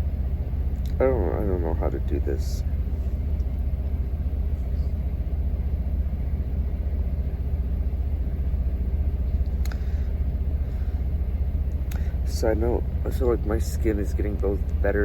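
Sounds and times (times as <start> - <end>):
truck engine rumbling: 0.0 - 15.0
faint click: 9.4 - 9.8.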